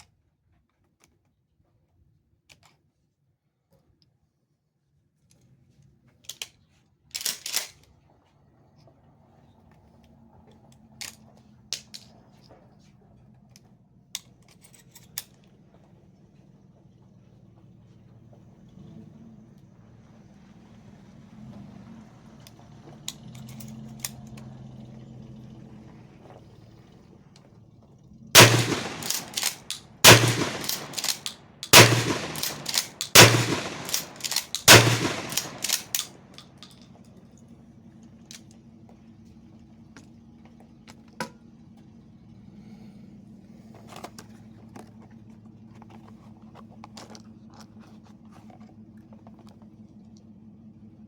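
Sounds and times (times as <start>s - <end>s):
handling clicks: 7.2s - 7.8s, 28.4s - 36.9s
shotgun slide clattering: 7.2s - 7.8s, 28.4s - 36.8s
shotgun shots: 28.4s - 36.4s.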